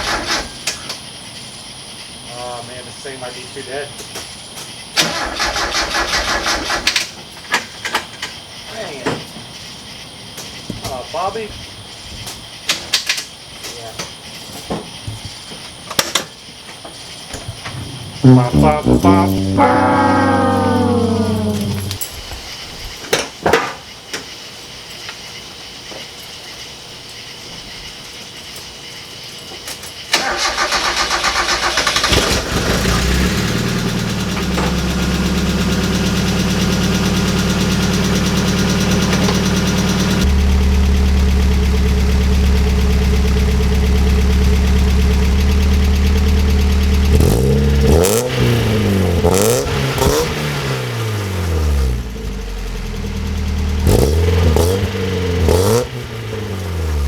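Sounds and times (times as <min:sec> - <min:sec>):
car engine starting and idling: 0:00.0 - 0:00.6, 0:17.5 - 0:22.0, 0:30.2 - 0:57.0
car engine revving: 0:17.5 - 0:22.0, 0:47.0 - 0:57.0.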